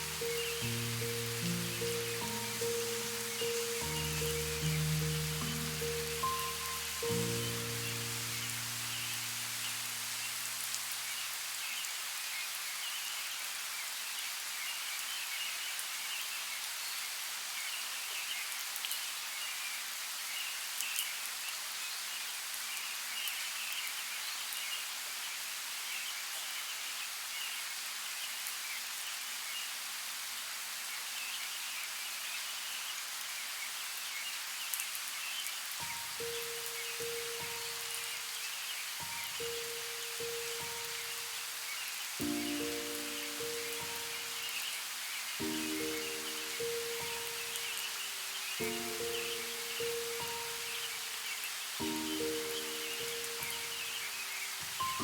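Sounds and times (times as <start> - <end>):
faint birdsong: 0.0 - 18.6, 30.8 - 55.0
light rain falling: 0.0 - 55.0.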